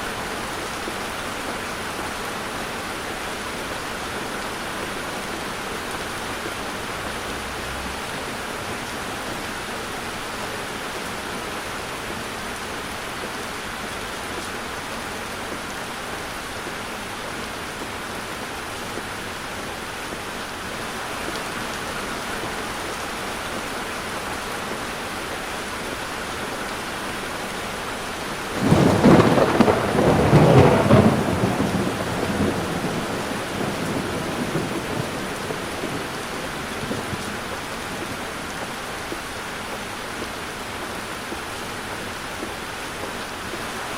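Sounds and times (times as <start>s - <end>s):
heavy rain: 0.0s - 43.9s
thunder rumble: 28.6s - 38.4s.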